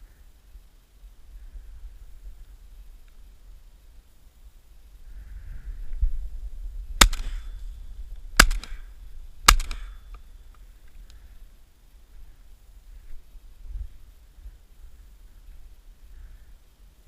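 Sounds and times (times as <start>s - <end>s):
shotgun shots with echo: 7.0s - 7.6s, 8.4s - 10.0s.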